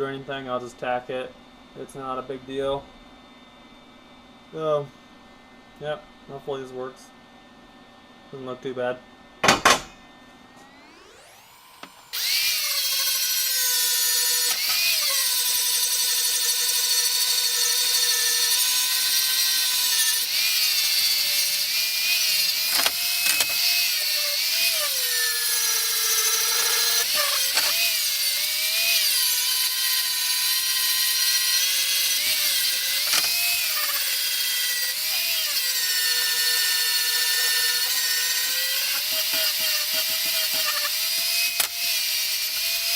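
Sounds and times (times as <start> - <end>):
angle grinder grinding metal: 10.6 - 42.9.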